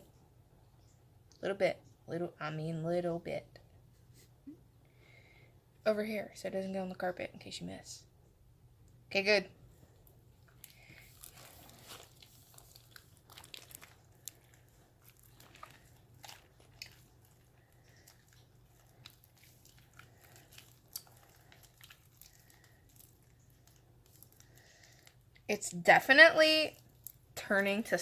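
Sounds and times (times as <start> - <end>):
slime crackling and squishing: 9.9 - 28.0.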